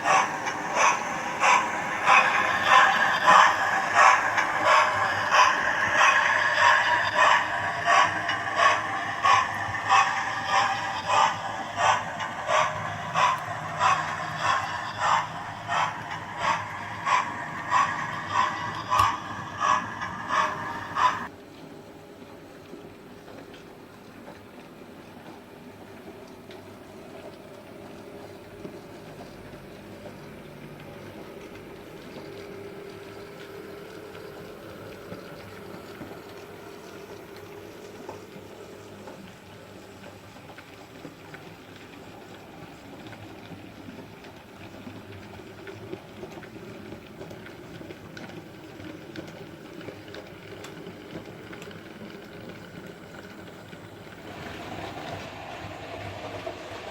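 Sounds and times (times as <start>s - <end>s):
model train whirring: 0.0s - 21.3s, 29.0s - 56.9s.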